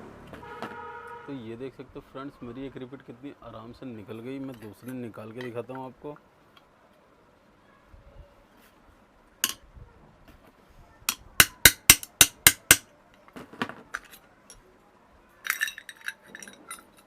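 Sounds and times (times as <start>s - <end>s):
metal clatter: 15.4s - 17.0s.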